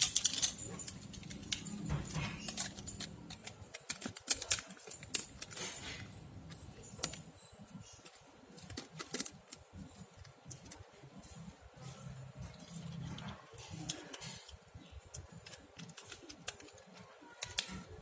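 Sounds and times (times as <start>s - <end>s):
clicks of phone parts and tools: 0.0s - 10.8s.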